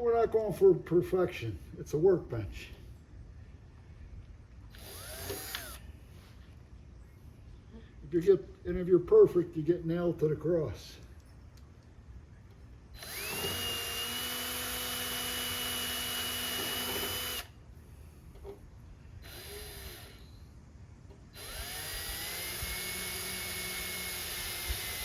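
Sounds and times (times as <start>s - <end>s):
power drill driving screws: 4.7s - 5.8s, 13.0s - 17.5s, 19.2s - 20.3s, 21.4s - 25.0s.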